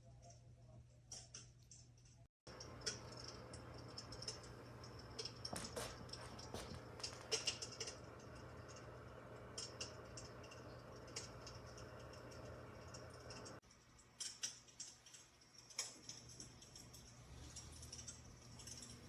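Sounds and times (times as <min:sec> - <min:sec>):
steady low hum: 0:02.5 - 0:13.7
simulated fire crackling: 0:02.5 - 0:19.0.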